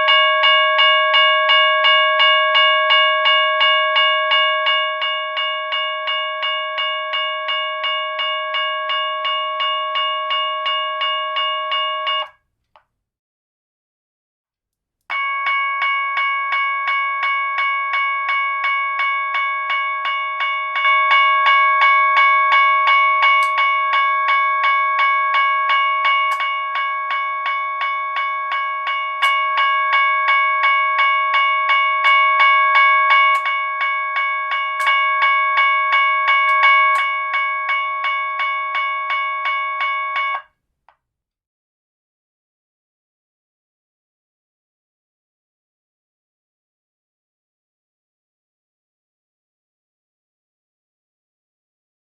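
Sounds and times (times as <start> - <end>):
electronic railroad crossing bell: 0.0 - 12.3, 15.1 - 40.5.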